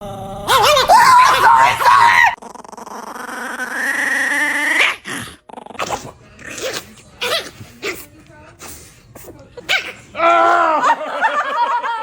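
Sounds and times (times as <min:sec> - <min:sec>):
puppy growl-whining: 0:00.0 - 0:08.1
puppy yipping and growling: 0:00.4 - 0:08.0.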